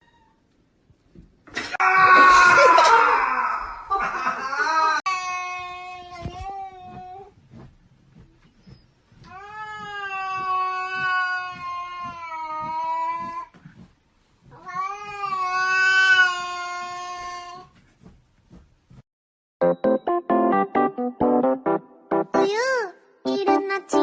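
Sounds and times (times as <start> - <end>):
angry cat yowling: 9.5 - 13.4.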